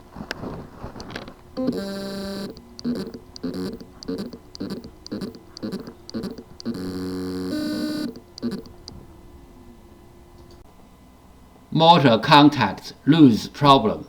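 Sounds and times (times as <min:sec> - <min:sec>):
hard drive buzzing hum: 0:00.0 - 0:11.7
hard drive motor pulsing: 0:00.4 - 0:09.2.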